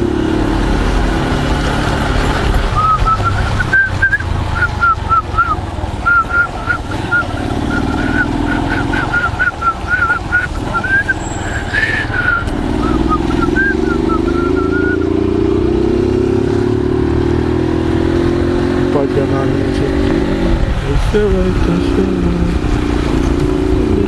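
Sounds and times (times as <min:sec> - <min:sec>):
heavy rain: 0:00.0 - 0:14.3
motorcycle engine and wind rumble: 0:00.0 - 0:24.0.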